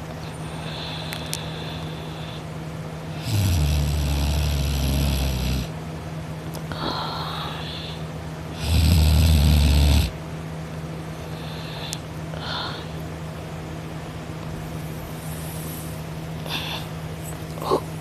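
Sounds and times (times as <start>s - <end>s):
person snoring: 3.1s - 5.7s, 8.6s - 10.1s, 15.2s - 16.9s
soft breath: 6.7s - 8.1s, 11.2s - 13.0s, 15.1s - 17.0s.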